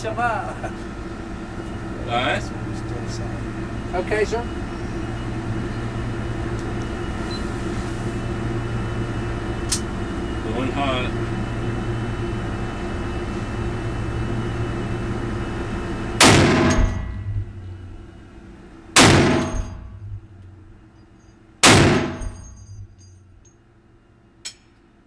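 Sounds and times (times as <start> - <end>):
steady hum: 0.0 - 25.0
rifle shots: 16.2 - 17.2, 19.0 - 19.8, 21.6 - 22.5.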